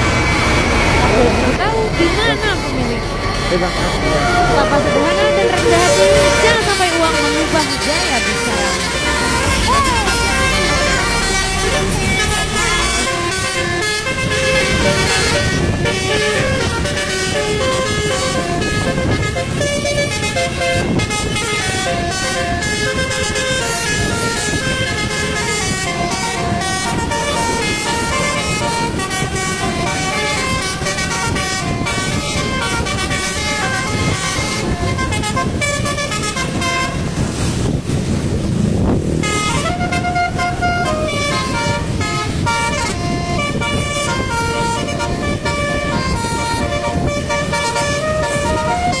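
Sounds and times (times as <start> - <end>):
bus engine running: 0.0 - 49.0
musical bus horn playing a tune: 0.0 - 49.0.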